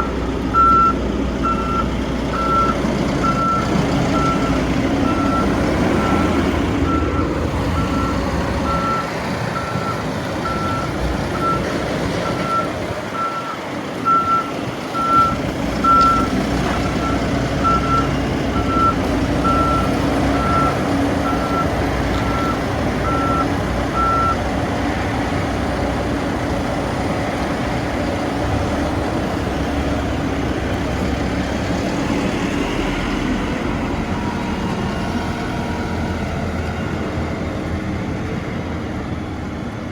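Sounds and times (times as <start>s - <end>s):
reversing alarm beeping: 0.0s - 24.4s
diesel engine running: 0.0s - 39.9s.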